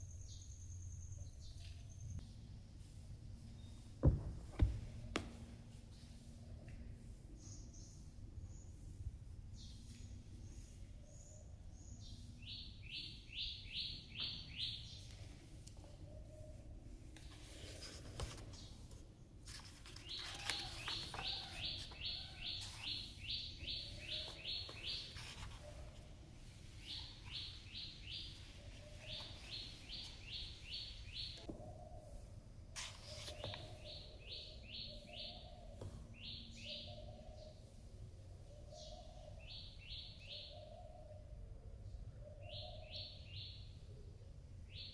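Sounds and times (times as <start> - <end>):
bird chirping: 0.0 - 4.0, 7.3 - 16.8, 19.7 - 32.3, 33.0 - 44.0
thin high bird calls: 19.5 - 26.0, 26.8 - 37.6.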